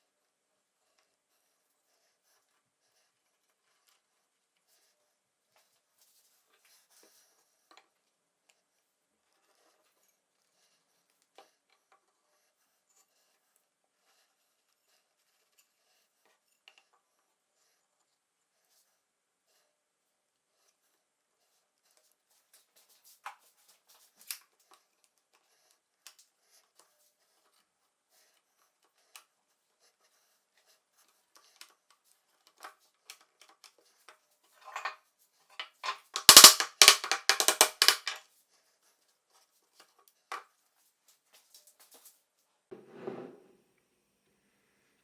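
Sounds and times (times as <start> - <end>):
tools clicking and knocking: 35.6 - 38.2
loud rapid clattering: 36.2 - 38.1.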